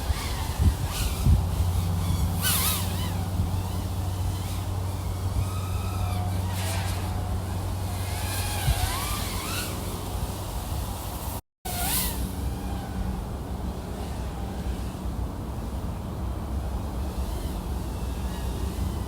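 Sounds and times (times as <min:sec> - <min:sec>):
short rushing surges: 0:00.0 - 0:15.9
quadcopter motors whirring: 0:00.0 - 0:19.0
steady low hum: 0:00.0 - 0:19.0.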